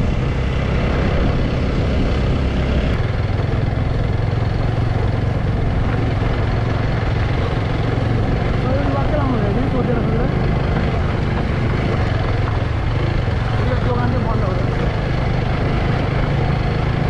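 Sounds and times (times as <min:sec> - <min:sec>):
wind noise on microphone: 0:00.0 - 0:08.4
small motorbike engine running: 0:00.0 - 0:17.0.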